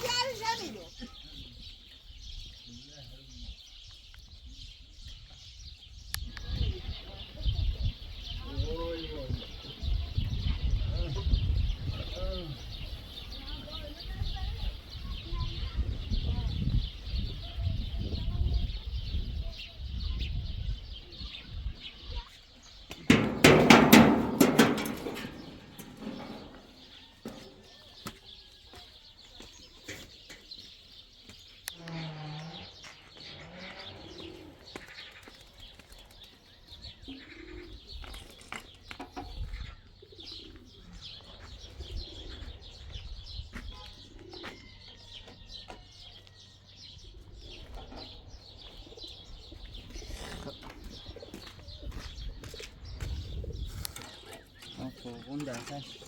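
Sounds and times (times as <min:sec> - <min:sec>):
birds with short low calls: 0:00.0 - 0:56.0.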